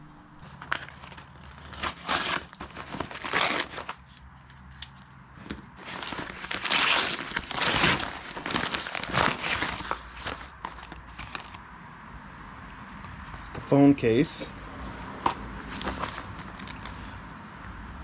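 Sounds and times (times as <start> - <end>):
packaging crinkling and tearing: 0.4 - 11.6, 15.6 - 17.2.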